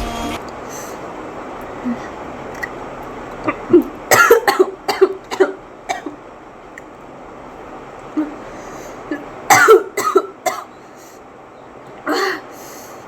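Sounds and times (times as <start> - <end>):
woman coughing: 4.1 - 6.1, 9.5 - 10.7.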